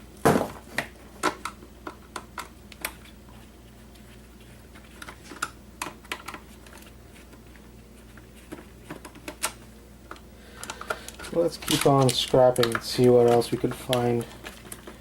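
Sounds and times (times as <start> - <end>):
hand tools clicking on plastic parts: 8.5 - 15.0.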